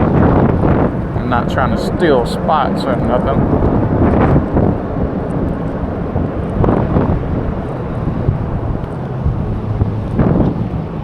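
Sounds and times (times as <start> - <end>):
wind buffeting microphone: 0.0 - 11.0.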